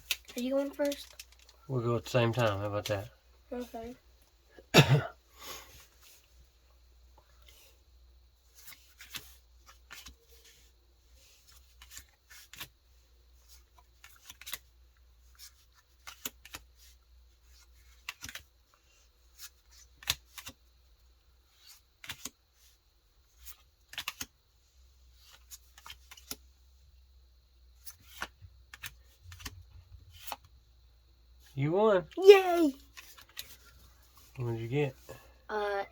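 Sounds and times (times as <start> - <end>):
cards clicking and flicking: 8.6 - 10.2, 11.5 - 12.7, 13.5 - 14.7, 15.4 - 18.5, 19.3 - 20.6, 21.6 - 22.4, 23.3 - 24.3, 25.1 - 26.5, 27.8 - 30.5.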